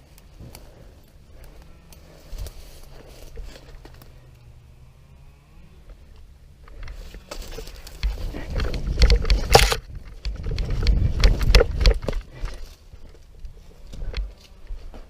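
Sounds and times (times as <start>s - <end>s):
rustling through leaves and brush: 0.0s - 4.6s, 5.8s - 15.0s
rumble against microphone: 0.0s - 15.0s.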